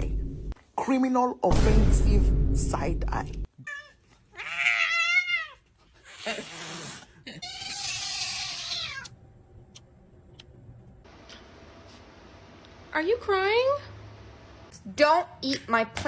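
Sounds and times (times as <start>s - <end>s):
cat meowing: 3.6s - 5.6s, 7.4s - 9.1s
hoarse hissy cat cries: 3.6s - 9.1s.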